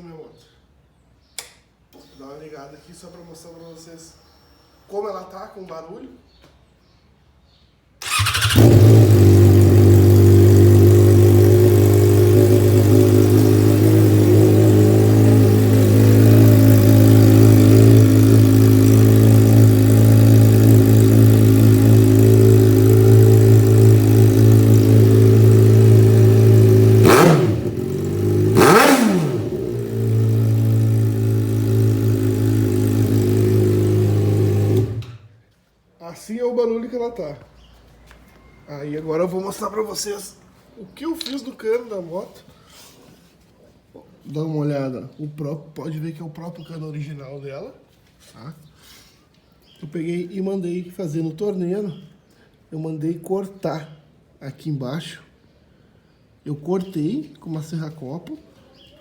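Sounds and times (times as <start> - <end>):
motorcycle engine idling: 8.0 - 35.0.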